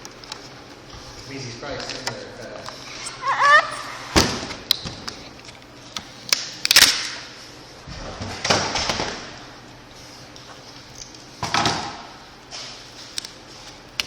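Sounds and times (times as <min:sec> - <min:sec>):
plastic squeak: 0:02.9 - 0:04.8.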